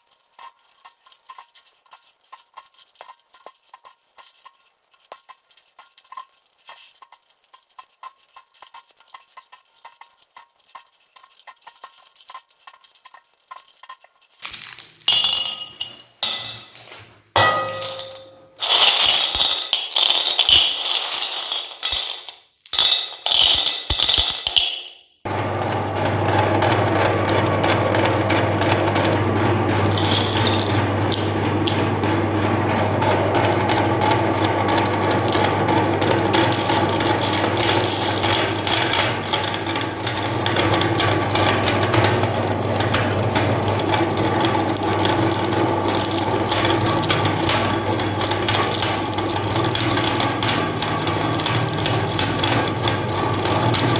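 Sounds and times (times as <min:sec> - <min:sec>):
handling clatter and clinks: 0:14.4 - 0:25.0, 0:35.3 - 0:53.9
meat grinder motor humming: 0:25.3 - 0:53.9.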